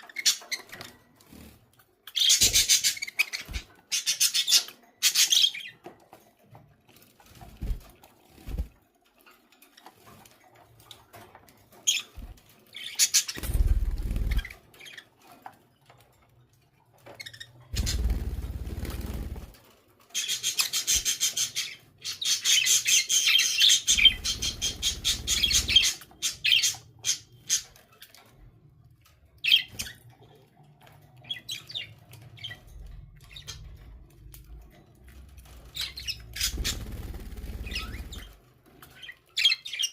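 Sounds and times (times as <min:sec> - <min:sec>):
wing flapping: 0:07.3 - 0:08.8, 0:13.1 - 0:14.6, 0:17.7 - 0:19.6, 0:35.8 - 0:38.4
budgerigars chirping: 0:20.2 - 0:27.7.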